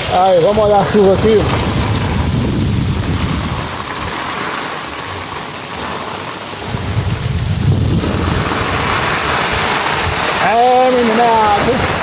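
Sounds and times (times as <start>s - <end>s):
low rumble: 0.0s - 4.2s, 6.6s - 10.4s
heavy rain pouring: 0.0s - 12.0s
wind: 0.0s - 12.0s.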